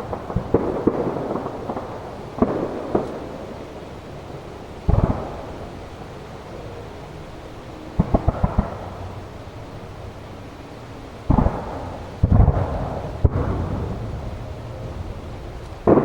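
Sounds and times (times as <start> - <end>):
firework sharp bangs: 0.0 - 3.7, 4.9 - 5.8, 8.0 - 9.0, 11.3 - 16.0
sharp firework crack: 0.0 - 3.7, 15.6 - 16.0
heavy firework booms rumbling: 0.0 - 6.1, 11.3 - 16.0.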